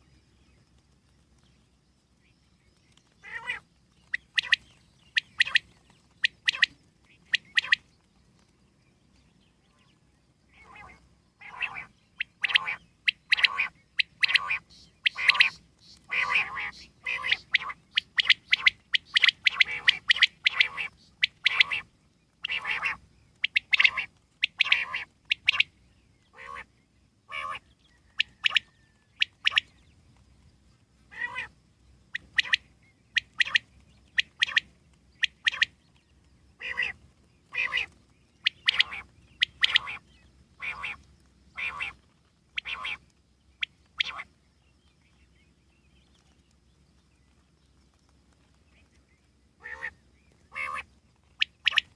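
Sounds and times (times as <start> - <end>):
quail calling: 3.2 - 7.8, 10.5 - 25.7, 26.3 - 26.7, 27.3 - 29.7, 31.1 - 35.8, 36.6 - 43.0, 43.6 - 44.3, 49.6 - 51.9.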